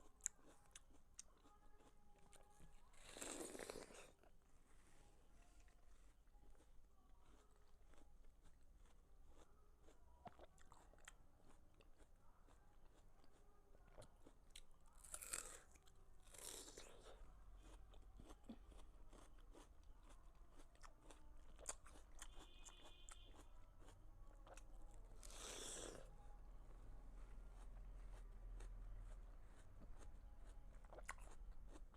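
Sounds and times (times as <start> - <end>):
watermelon chewing: 0.0 - 4.4, 14.0 - 26.2, 27.5 - 31.9.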